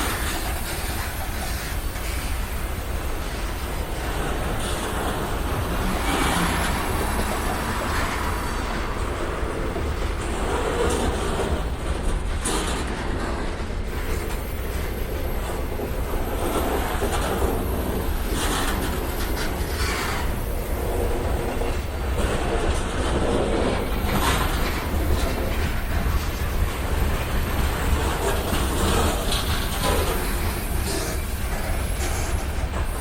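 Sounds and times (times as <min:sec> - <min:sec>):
freight train rumbling past: 0:00.0 - 0:33.0
wheels clicking over rail joints: 0:00.0 - 0:33.0
faint wheel squeal: 0:23.3 - 0:33.0.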